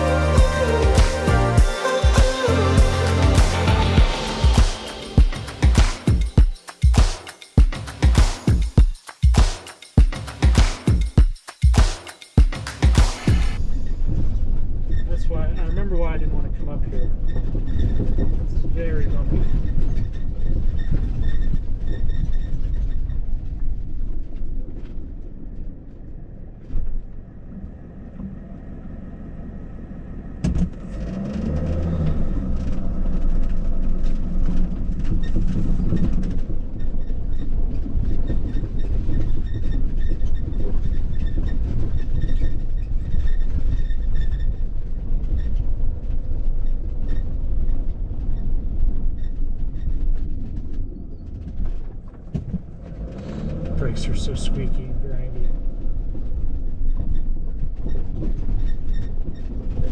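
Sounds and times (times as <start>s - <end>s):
pitched rising sound: 0.0s - 8.8s
van engine low rumble: 13.6s - 59.9s.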